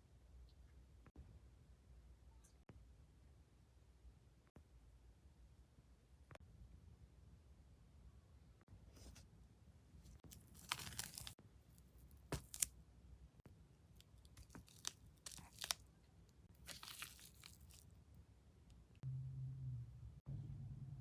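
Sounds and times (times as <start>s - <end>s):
packaging crinkling and tearing: 10.3s - 11.4s, 12.3s - 12.7s, 14.2s - 15.8s, 16.6s - 17.8s.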